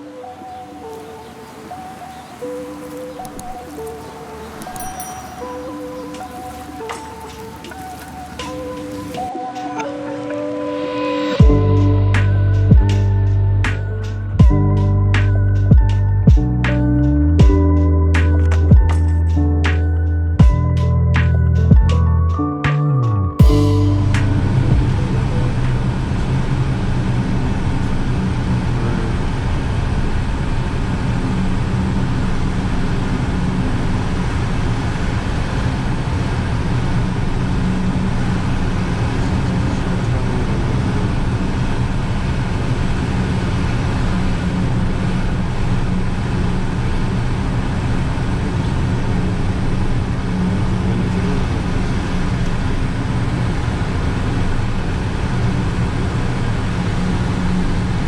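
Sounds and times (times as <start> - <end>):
low hum: 7.9 - 58.0.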